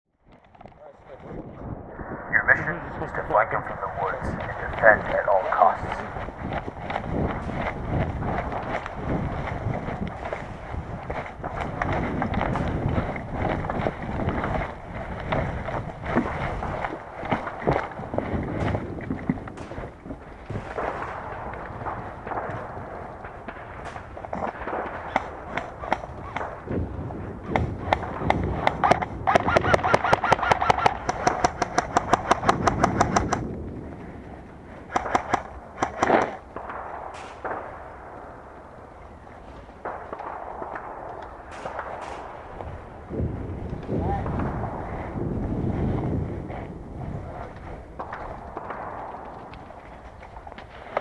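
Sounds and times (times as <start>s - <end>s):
airsoft gun shots: 27.5s - 33.5s, 34.9s - 38.0s, 39.8s - 42.7s.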